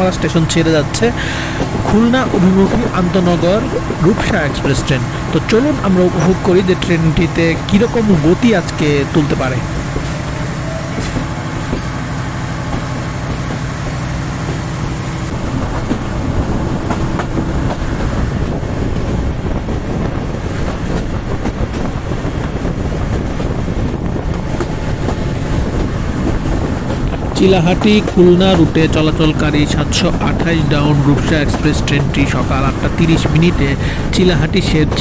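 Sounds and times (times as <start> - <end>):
rail joint clicks: 0.0 - 12.0, 24.3 - 35.0
diesel engine drone: 0.0 - 35.0
train wheels rumbling on rails: 0.0 - 35.0.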